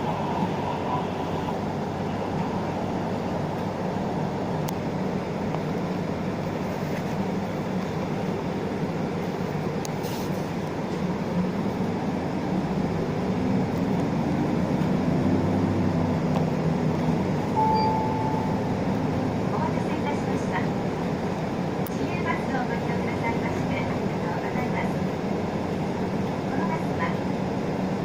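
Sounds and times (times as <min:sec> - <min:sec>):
bus diesel engine running: 0:00.0 - 0:28.0
short beep: 0:17.6 - 0:18.7.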